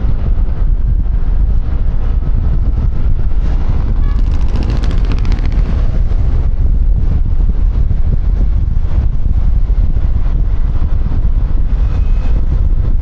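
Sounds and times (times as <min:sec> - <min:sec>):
wind buffeting microphone: 0:00.0 - 0:13.0
traffic: 0:01.0 - 0:12.8
motorcycle engine running: 0:03.4 - 0:06.8
rapid buzzing pulse: 0:03.4 - 0:06.8.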